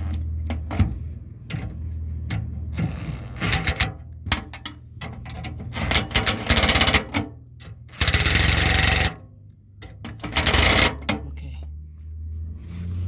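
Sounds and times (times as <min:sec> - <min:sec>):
ratchet wrench clicking: 0:07.9 - 0:09.2, 0:10.2 - 0:11.0.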